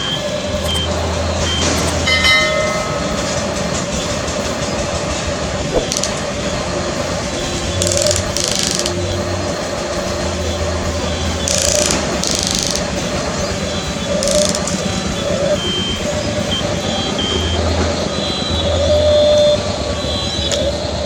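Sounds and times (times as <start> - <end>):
small electric motors and gearing: 0.0 - 21.0
clicks: 7.7 - 9.2, 11.4 - 13.1.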